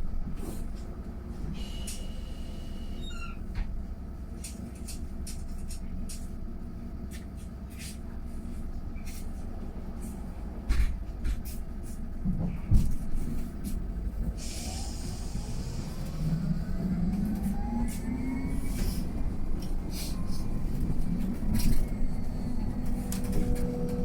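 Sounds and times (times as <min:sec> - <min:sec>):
bus rumbling: 0:00.0 - 0:24.0
rattles and clicks: 0:19.6 - 0:24.0.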